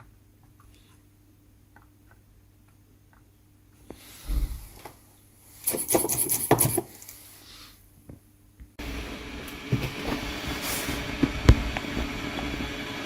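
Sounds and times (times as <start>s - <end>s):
rubbing and scraping handling noises: 3.9s - 7.8s.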